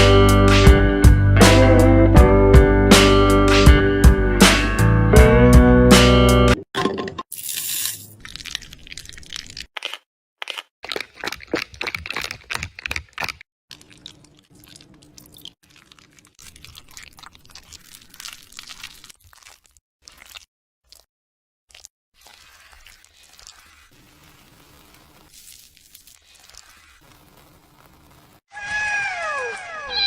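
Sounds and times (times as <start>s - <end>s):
crunching of crisp food: 7.5s - 21.1s, 21.7s - 28.4s.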